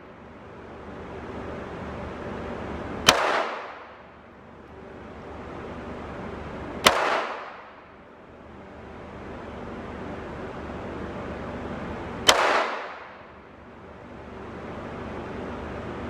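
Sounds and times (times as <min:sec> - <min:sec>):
pistol shots with echo: 0:03.0 - 0:04.1, 0:06.8 - 0:07.9, 0:12.2 - 0:13.4.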